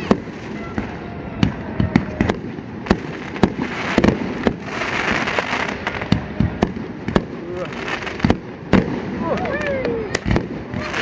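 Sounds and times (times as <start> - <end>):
fireworks bursting with bangs: 0.0 - 11.0.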